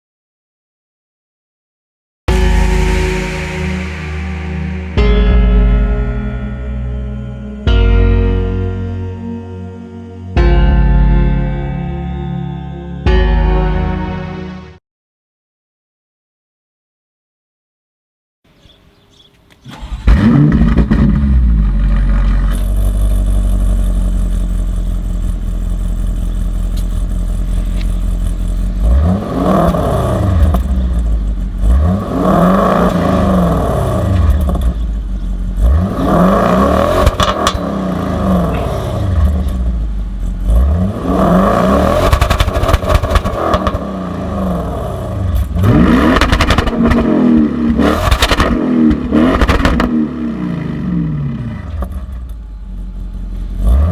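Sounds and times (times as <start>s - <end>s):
car engine starting and idling: 19.5s - 53.9s
car engine revving: 19.7s - 53.9s.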